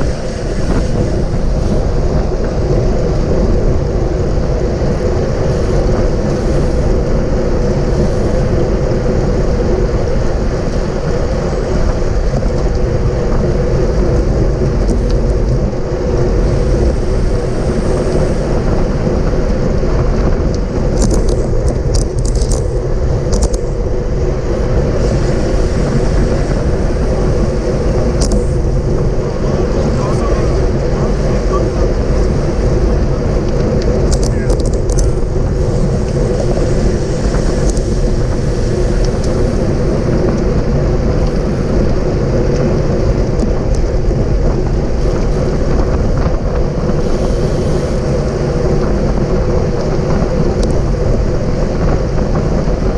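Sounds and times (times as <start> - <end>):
wind buffeting microphone: 0.0 - 52.9.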